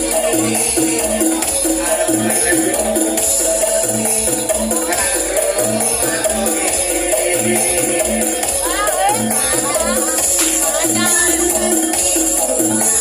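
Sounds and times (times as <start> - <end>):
dance music with repeating beat: 0.0 - 13.0
shaker-like rattle: 8.4 - 12.6.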